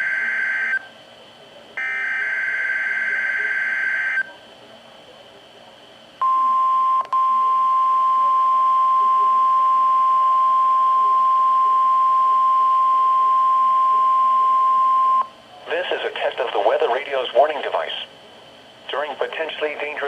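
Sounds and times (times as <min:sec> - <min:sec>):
faint radio hiss: 0:00.6 - 0:06.2, 0:15.2 - 0:20.0
weather radio alarm beep: 0:01.8 - 0:04.3, 0:06.2 - 0:15.3.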